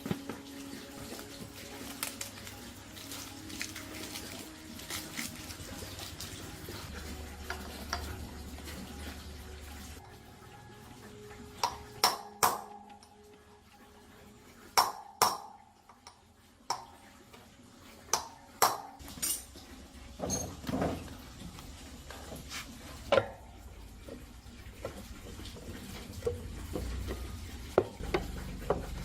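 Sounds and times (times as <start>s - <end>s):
metal objects clinking: 19.0s - 19.6s.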